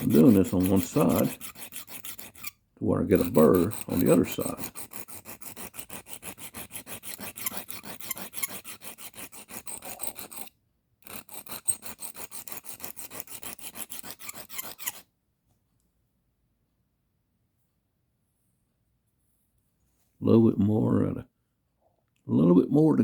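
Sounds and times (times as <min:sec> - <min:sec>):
knife blade rasping on sharpening stone: 0:00.0 - 0:02.6, 0:03.2 - 0:15.0.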